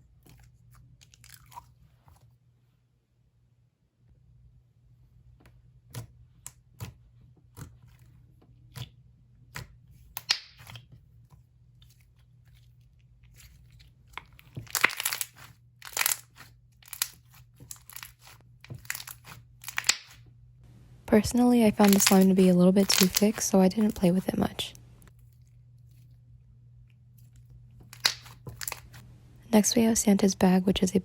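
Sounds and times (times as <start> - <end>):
slime with beads popping and crackling: 14.5 - 20.2, 21.2 - 25.0, 27.9 - 29.0.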